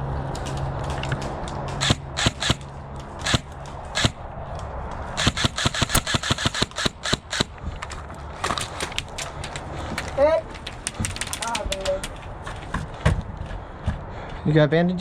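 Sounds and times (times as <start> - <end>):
airsoft gun shots: 1.8 - 4.2, 5.2 - 7.6.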